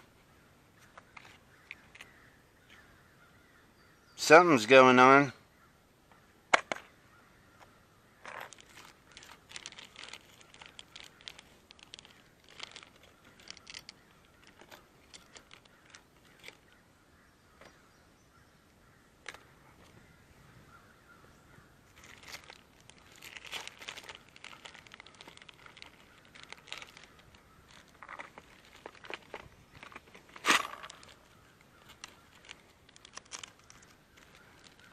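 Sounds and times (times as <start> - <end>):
crackling rustle: 0.0 - 3.0, 7.5 - 17.7, 18.8 - 34.9
crows cawing: 5.5 - 17.8, 18.4 - 28.9.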